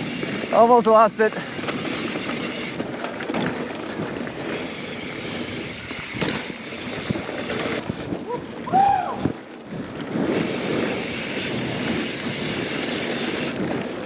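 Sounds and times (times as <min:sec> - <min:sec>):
bike tyres on dirt trail: 0:00.0 - 0:14.0
bike knocking over bumps: 0:01.6 - 0:04.6, 0:05.9 - 0:08.2.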